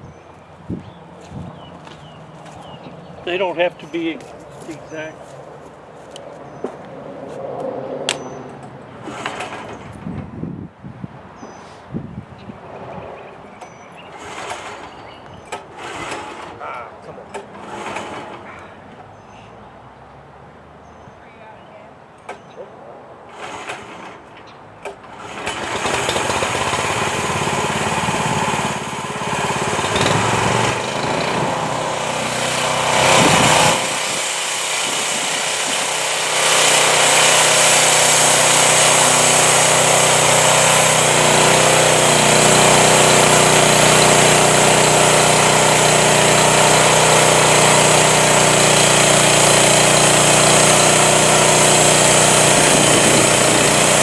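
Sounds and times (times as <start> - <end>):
band sawmill running: 9.0 - 9.9, 14.2 - 15.0, 15.6 - 16.8, 17.4 - 18.5, 23.3 - 24.2, 25.0 - 54.0.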